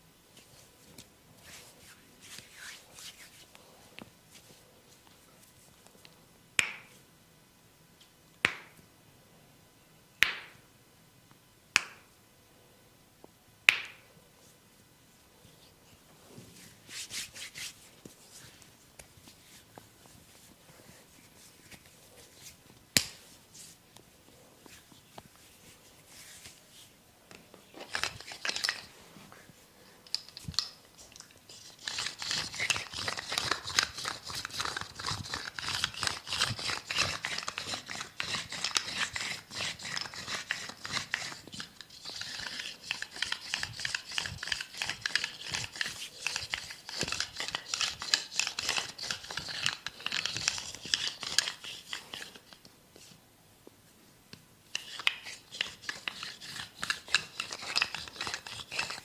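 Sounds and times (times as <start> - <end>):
hands rubbing and scratching: 0.4 - 3.6, 15.6 - 24.0, 24.6 - 27.0, 27.7 - 29.0, 30.1 - 53.2, 54.7 - 59.0.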